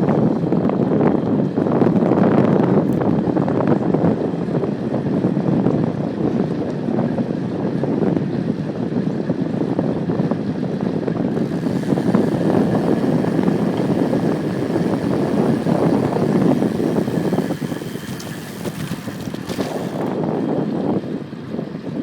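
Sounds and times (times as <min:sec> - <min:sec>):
wind rushing over microphone: 0:00.0 - 0:22.0.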